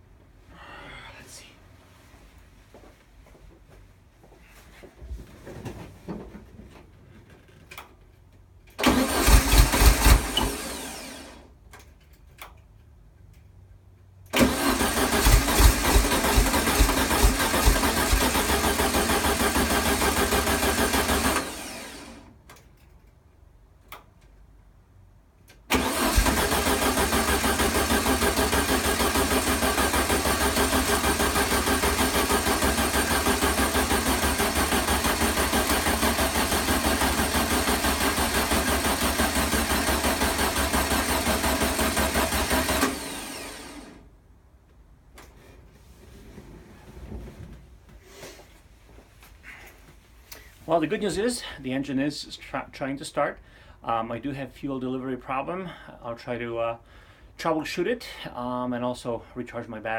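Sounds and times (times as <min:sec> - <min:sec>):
car engine cranking: 0:08.7 - 0:11.4, 0:14.3 - 0:22.2, 0:25.6 - 0:44.0.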